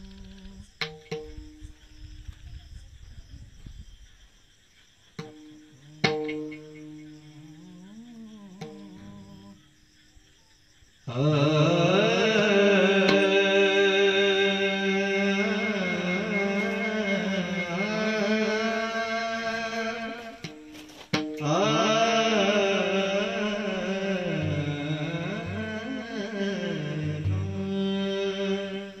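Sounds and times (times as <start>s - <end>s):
man singing ornamented melody: 5.2s - 9.6s, 11.1s - 29.0s.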